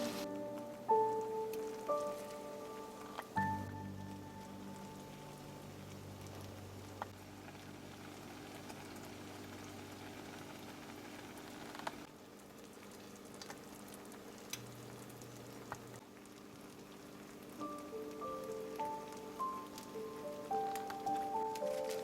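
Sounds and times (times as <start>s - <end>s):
low background tones: 0.0s - 7.2s
food simmering in a frying pan: 0.0s - 22.0s.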